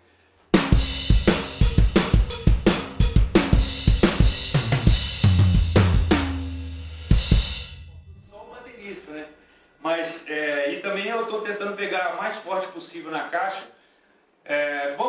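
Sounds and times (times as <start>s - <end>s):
drum kit playing: 0.6s - 8.5s
floor tom ringing: 0.6s - 9.4s.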